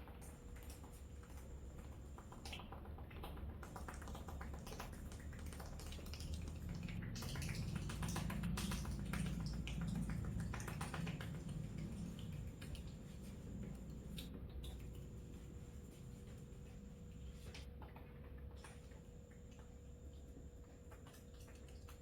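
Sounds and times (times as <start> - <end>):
massage strokes clicking and tapping: 0.0 - 15.2.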